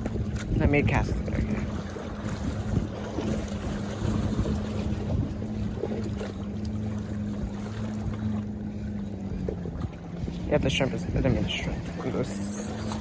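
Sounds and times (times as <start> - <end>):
low hum: 0.0 - 13.0
surf: 0.0 - 13.0
wind buffeting microphone: 0.0 - 13.0.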